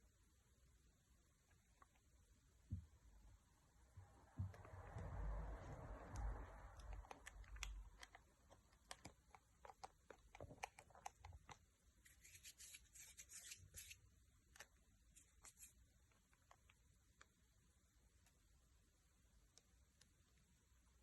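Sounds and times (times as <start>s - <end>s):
soft high rubbing scratch: 12.0s - 14.0s.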